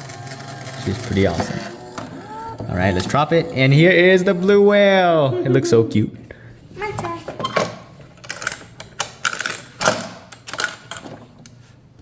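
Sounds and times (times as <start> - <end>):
plastic clicks of claw machine: 8.2 - 11.2.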